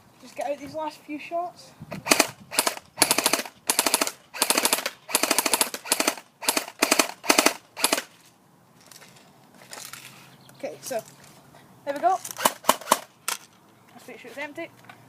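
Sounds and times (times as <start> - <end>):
airsoft gun firing bursts: 2.0 - 8.1, 12.4 - 13.1.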